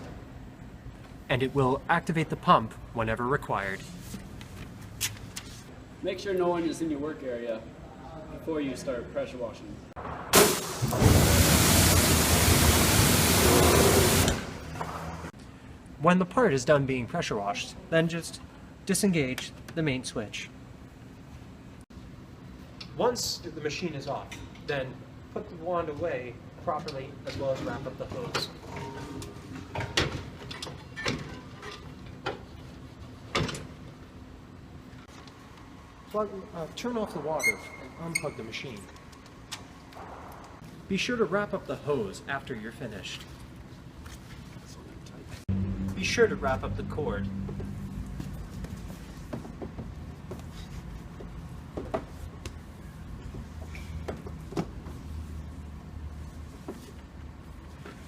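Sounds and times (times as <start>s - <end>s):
low steady hum: 39.8s - 58.0s.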